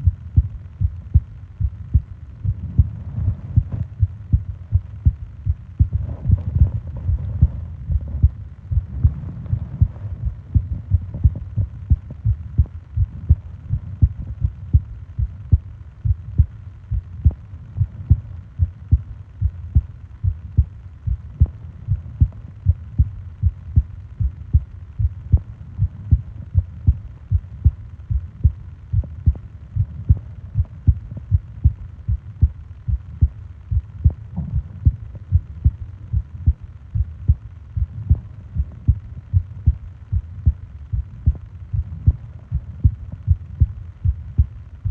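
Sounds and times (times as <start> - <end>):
heartbeat thumping: 0.0 - 44.9
soft breathing: 5.8 - 11.5.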